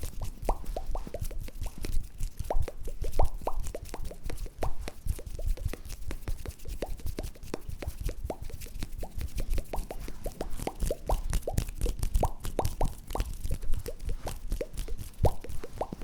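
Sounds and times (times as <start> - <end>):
wet popping and clicking: 0.0 - 16.0.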